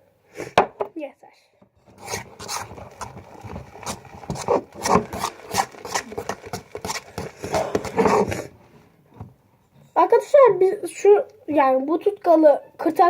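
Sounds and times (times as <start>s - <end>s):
spoon scraping slime in a plate: 1.8s - 8.5s.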